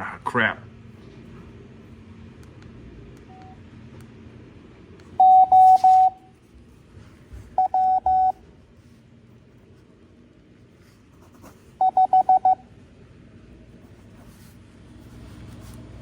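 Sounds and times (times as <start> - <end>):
morse code beeps: 5.2 - 6.2, 7.6 - 8.4, 11.8 - 12.6.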